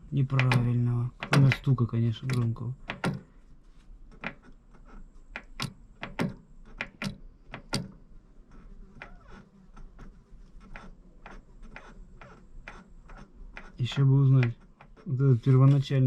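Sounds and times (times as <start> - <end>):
metallic clicks and knocks: 0.2 - 3.3, 5.4 - 8.0.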